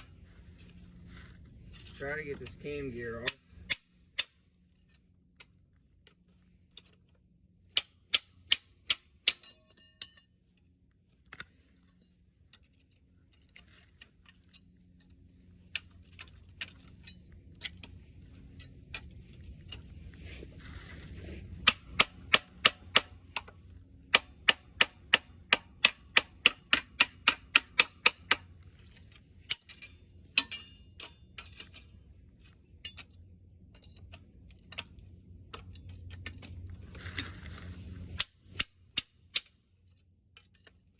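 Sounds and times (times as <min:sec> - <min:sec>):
metal-on-metal clicks: 0:21.6 - 0:28.5, 0:29.5 - 0:31.9.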